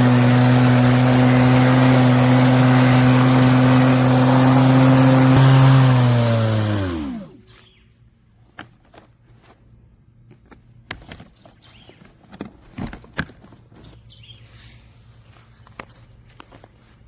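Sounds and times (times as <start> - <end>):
motor spinning down whine: 0.0 - 7.4
lawn mower running: 0.0 - 7.6.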